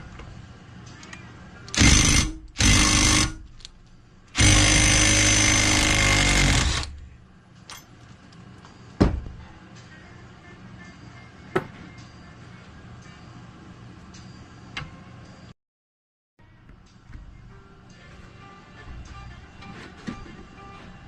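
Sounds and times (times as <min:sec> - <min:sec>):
pneumatic impact wrench hammering: 0:01.7 - 0:03.5, 0:04.3 - 0:07.0.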